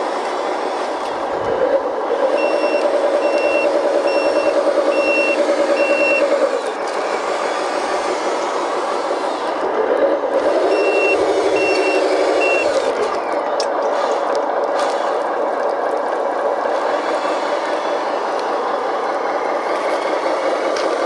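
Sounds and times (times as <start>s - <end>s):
motors and hydraulic pump whining: 0.0s - 21.0s
high reversing beeps: 2.4s - 6.4s, 10.7s - 12.8s.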